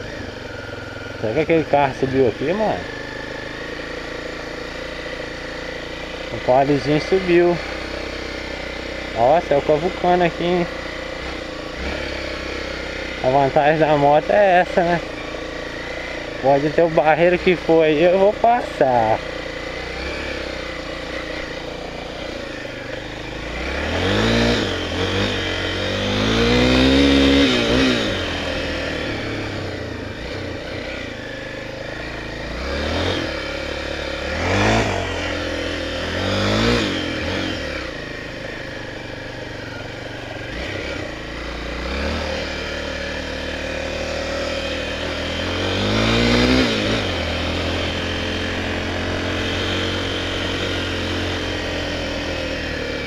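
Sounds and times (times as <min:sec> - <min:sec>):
motorcycle engine revving: 0:00.0 - 0:53.0.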